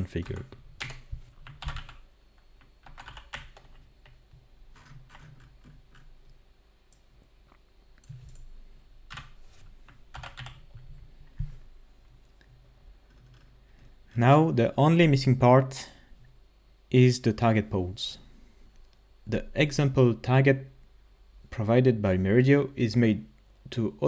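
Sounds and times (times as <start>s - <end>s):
typing on computer keyboard: 0.2s - 2.0s, 2.6s - 6.2s, 9.1s - 10.8s.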